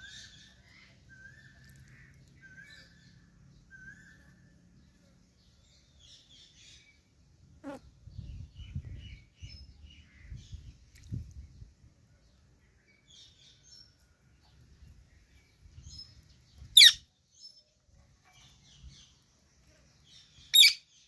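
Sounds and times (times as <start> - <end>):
parrot chirping: 16.7 - 17.1, 20.5 - 20.8.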